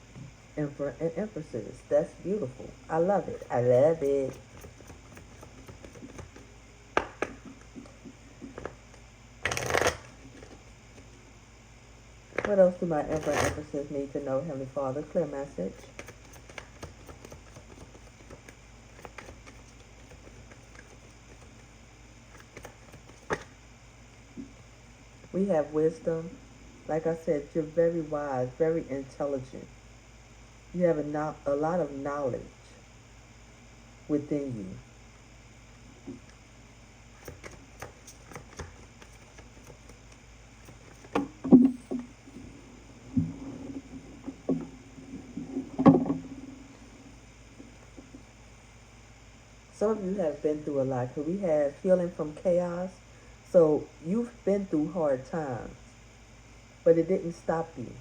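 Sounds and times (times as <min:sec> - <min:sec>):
cards tapping and clicking: 0:03.4 - 0:08.8, 0:09.4 - 0:11.1, 0:15.8 - 0:21.7, 0:22.3 - 0:23.5, 0:37.2 - 0:42.1.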